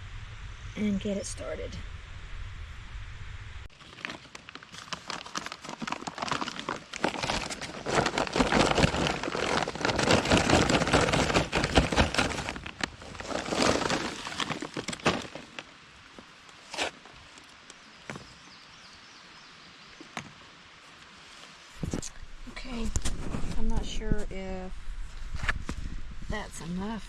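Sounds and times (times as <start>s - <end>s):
bag crinkling: 3.7s - 15.7s
charcoal briquettes clattering: 3.8s - 15.7s.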